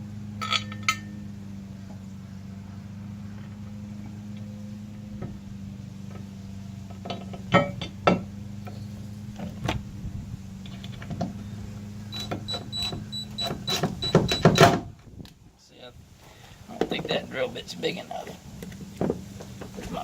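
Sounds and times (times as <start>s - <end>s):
power drill driving screw: 12.1s - 14.7s
sharp knocks and clicks: 12.1s - 14.8s.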